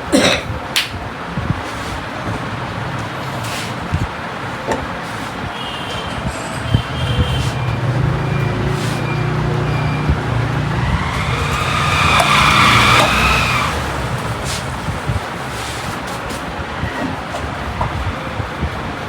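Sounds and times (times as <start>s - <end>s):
vehicle engine hum: 1.2s - 16.8s
high squeal: 5.8s - 15.3s.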